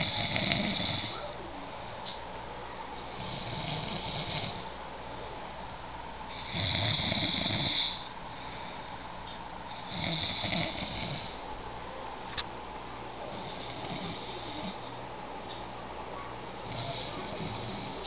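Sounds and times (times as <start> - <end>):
slow snoring: 0.0 - 1.2, 3.0 - 4.7, 6.3 - 8.1, 9.7 - 11.4, 13.3 - 14.8, 16.6 - 18.0.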